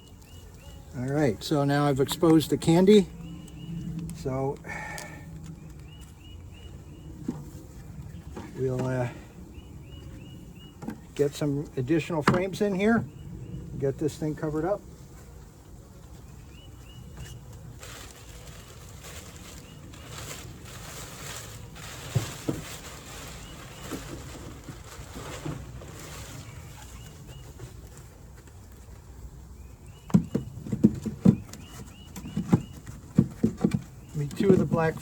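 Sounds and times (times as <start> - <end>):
faint bird chirping: 0.0 - 8.5
rustling and scraping of hive boxes: 0.0 - 35.0.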